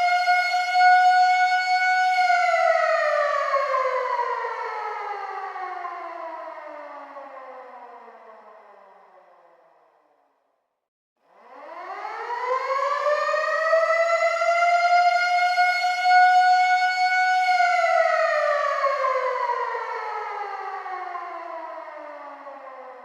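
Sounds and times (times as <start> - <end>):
air raid siren wailing: 0.0 - 9.7, 11.3 - 23.0.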